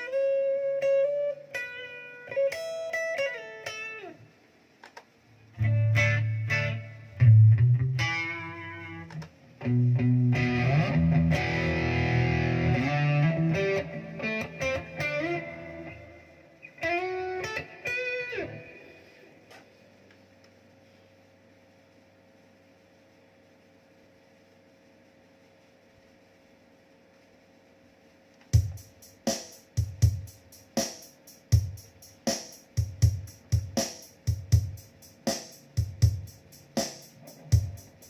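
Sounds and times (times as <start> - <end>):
guitar amp hum and hiss: 0.0 - 38.0
drum machine beat: 28.5 - 38.0.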